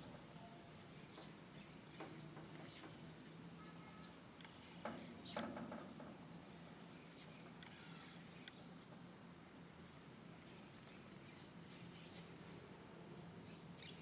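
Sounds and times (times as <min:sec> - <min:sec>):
faint low hum: 0:00.0 - 0:14.0
small birds chirping: 0:00.4 - 0:05.8, 0:06.5 - 0:14.0
soft knocks: 0:04.8 - 0:06.2.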